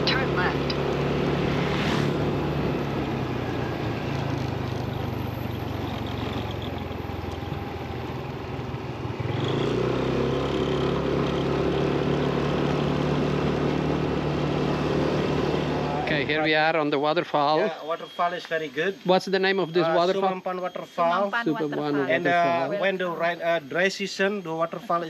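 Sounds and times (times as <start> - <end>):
vehicle engine accelerating: 0.0 - 16.8
road noise: 0.0 - 25.0.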